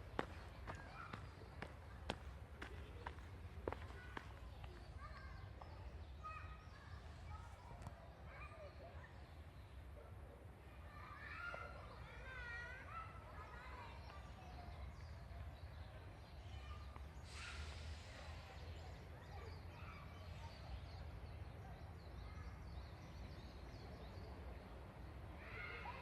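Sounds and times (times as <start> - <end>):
brief hissing rush: 17.2 - 18.4.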